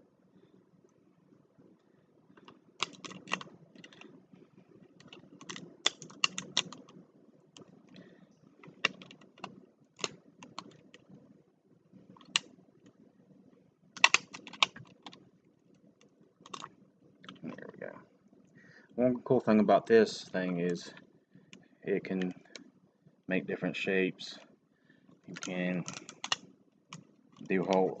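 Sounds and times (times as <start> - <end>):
plastic puzzle tiles clacking: 14.0 - 15.2, 25.3 - 26.4.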